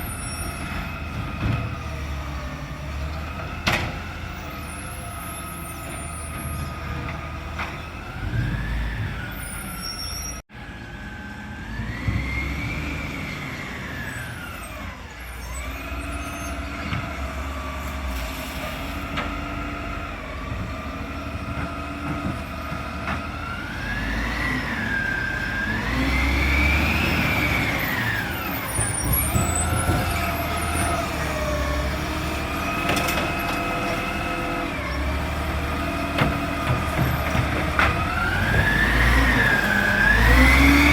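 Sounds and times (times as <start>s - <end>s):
garbage truck engine revving: 11.4s - 40.9s.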